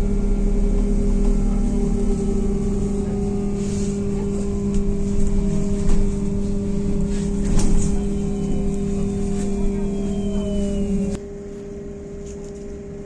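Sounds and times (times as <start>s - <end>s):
electrical hum: 0.0s - 13.0s
electric motor whine: 1.3s - 11.2s.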